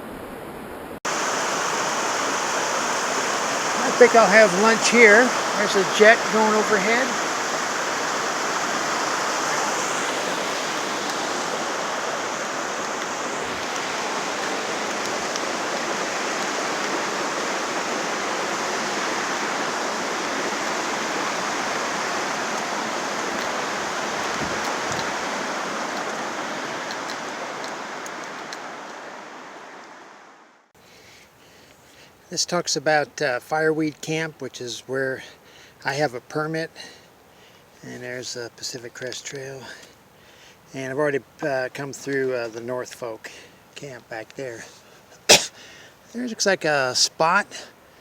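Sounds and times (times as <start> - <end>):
creek water rushing: 0.0 - 30.5, 44.4 - 48.0.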